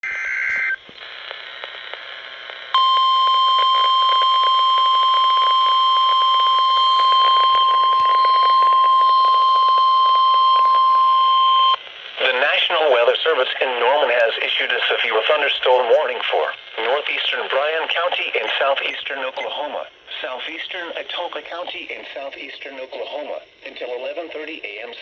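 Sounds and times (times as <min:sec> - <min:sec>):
radio static: 0:00.0 - 0:25.0
steady warning alarm tone: 0:02.8 - 0:11.8
warbling data tones: 0:17.6 - 0:23.2.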